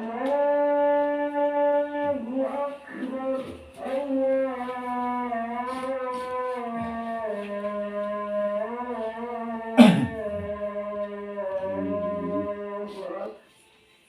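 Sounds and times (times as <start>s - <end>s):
wavering voice-like tone: 9.9s - 13.0s.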